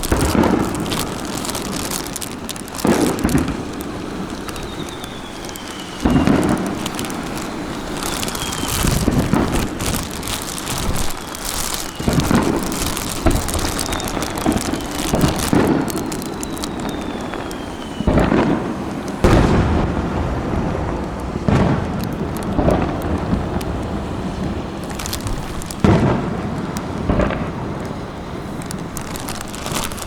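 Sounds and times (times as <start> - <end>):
crackling salutes: 0.0 - 30.0
fireworks booming: 0.0 - 30.0
falling whistle: 4.3 - 10.0, 10.6 - 18.5.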